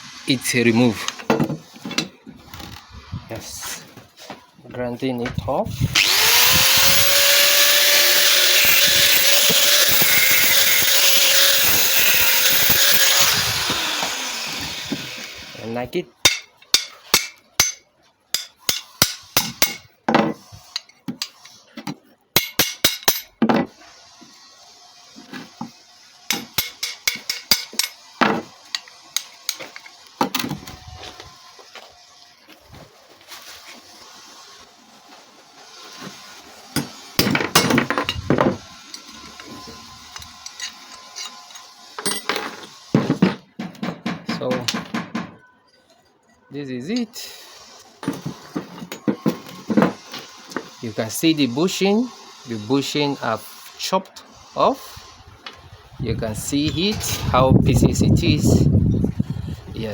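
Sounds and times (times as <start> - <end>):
hammer striking steel: 16.2 - 17.8, 18.4 - 19.9, 22.4 - 23.3, 26.3 - 28.0
hammer knocking on metal hinge: 43.0 - 45.4.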